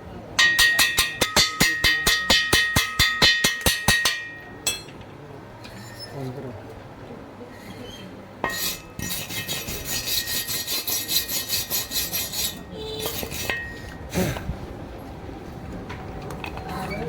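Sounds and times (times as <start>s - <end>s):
hand tool scraping metal: 0.4s - 4.9s, 5.6s - 6.2s, 7.6s - 14.0s.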